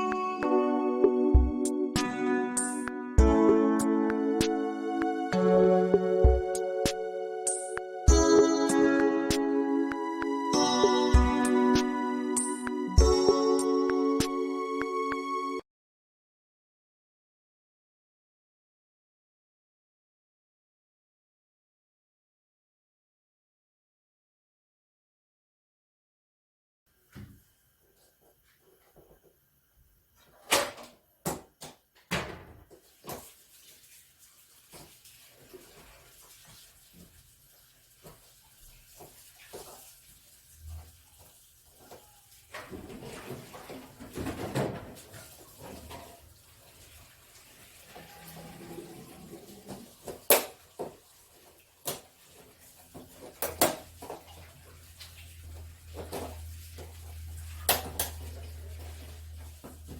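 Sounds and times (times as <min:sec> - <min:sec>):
low steady hum: 0:52.8 - 0:59.9.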